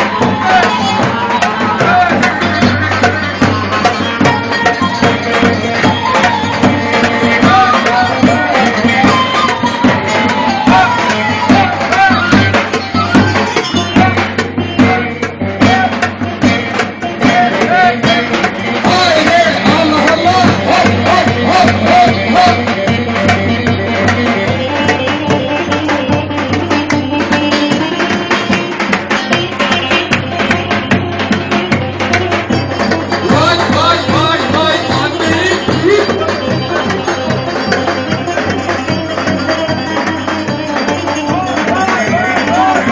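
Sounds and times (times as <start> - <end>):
folk music with drum beat: 0.0 - 42.9
wavering ornamented melody: 2.4 - 14.4.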